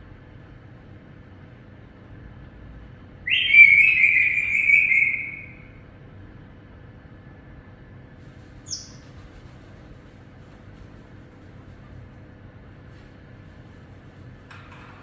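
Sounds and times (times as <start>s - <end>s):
high bird chirp: 3.3s - 5.7s, 8.7s - 9.0s
parrot call: 3.3s - 5.7s.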